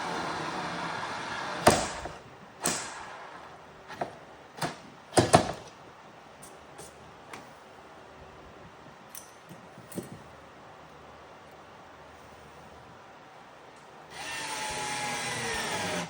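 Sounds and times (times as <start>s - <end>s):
power drill winding down: 14.1s - 16.0s.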